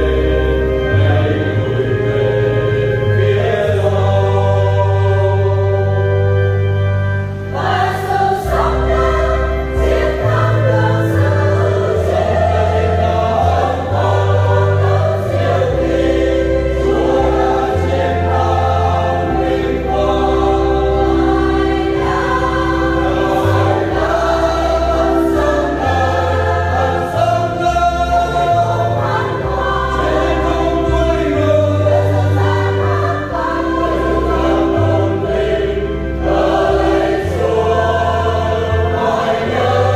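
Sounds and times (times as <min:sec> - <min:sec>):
choir singing a hymn: 0:00.0 - 0:39.9
instrumental accompaniment: 0:00.0 - 0:39.9.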